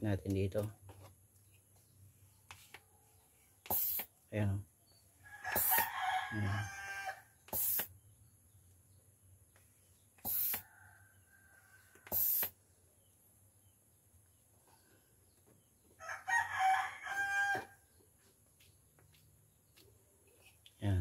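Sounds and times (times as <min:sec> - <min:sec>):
short bursts of hiss: 0:03.6 - 0:04.1, 0:05.5 - 0:05.9, 0:07.5 - 0:08.0, 0:10.2 - 0:10.7, 0:12.0 - 0:12.6
rooster crowing: 0:05.2 - 0:07.4, 0:10.6 - 0:12.1, 0:16.0 - 0:17.9.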